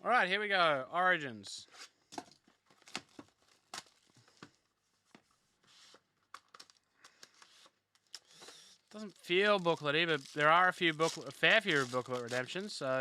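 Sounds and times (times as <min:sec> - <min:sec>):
cardboard and wrapper tearing: 0:02.6 - 0:04.6, 0:06.3 - 0:13.0.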